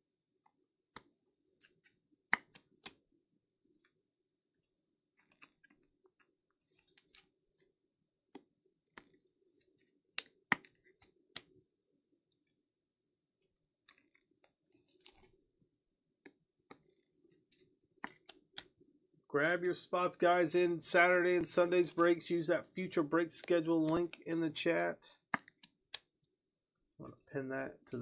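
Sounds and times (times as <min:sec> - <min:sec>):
rustling plastic and card: 0:05.2 - 0:07.7, 0:13.9 - 0:15.4, 0:20.9 - 0:25.8
clicks of plastic card holders: 0:23.4 - 0:24.2.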